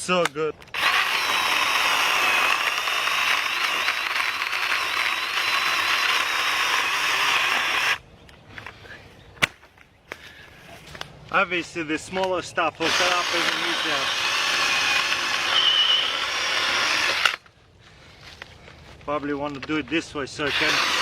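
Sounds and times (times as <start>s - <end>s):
mini chainsaw cutting wood: 0.7s - 8.0s, 12.8s - 17.4s, 20.4s - 21.0s.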